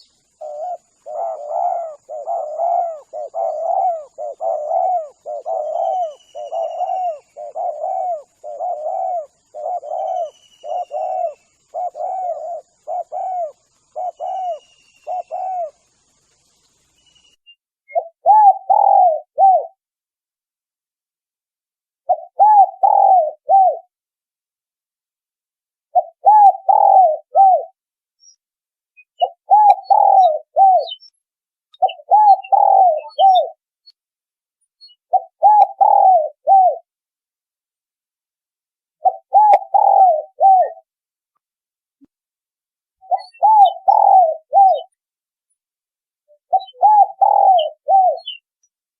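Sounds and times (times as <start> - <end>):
dove cooing: 0.0 - 16.2, 17.9 - 19.8, 22.0 - 23.9, 25.9 - 27.8, 29.2 - 31.0, 31.8 - 33.6, 35.1 - 36.9, 39.0 - 40.9, 43.0 - 45.0, 46.3 - 48.4
small birds chirping: 0.0 - 19.8, 22.0 - 23.9, 25.9 - 36.8, 39.0 - 41.4, 43.0 - 45.7, 46.3 - 48.8.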